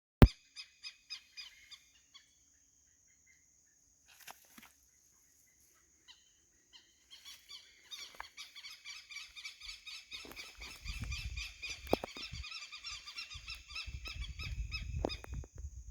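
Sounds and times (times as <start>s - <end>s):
birds calling harsh repeated notes: 6.0s - 15.4s.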